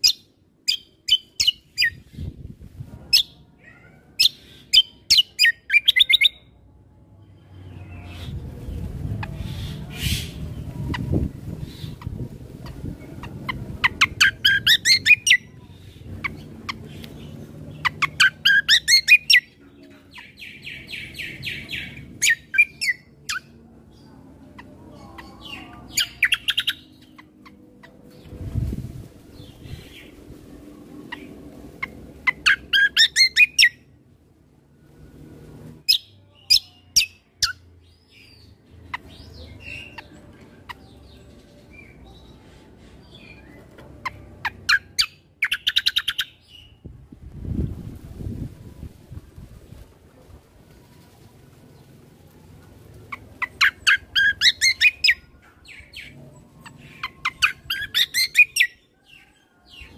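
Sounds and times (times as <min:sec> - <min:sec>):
buzzy bird trill: 0:13.2 - 0:19.6, 0:31.1 - 0:33.8, 0:53.1 - 0:55.2.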